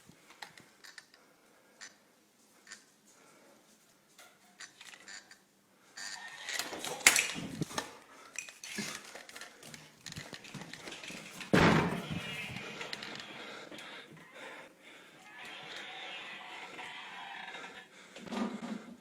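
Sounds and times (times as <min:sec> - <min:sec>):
knocks and rustling: 0:10.0 - 0:13.5.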